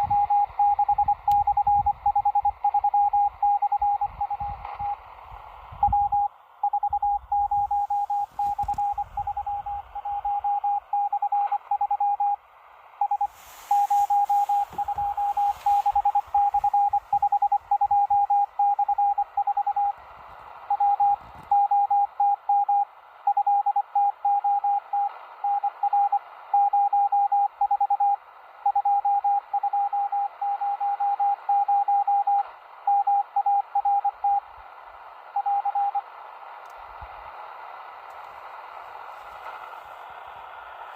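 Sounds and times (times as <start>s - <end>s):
morse code beeps: 0.0s - 5.0s, 5.8s - 12.4s, 13.0s - 20.0s, 20.7s - 34.4s, 35.4s - 36.0s
static crackle: 0.0s - 29.6s, 30.3s - 40.9s
radio band hiss: 4.1s - 5.8s, 7.2s - 11.7s, 12.3s - 21.5s, 36.1s - 40.9s.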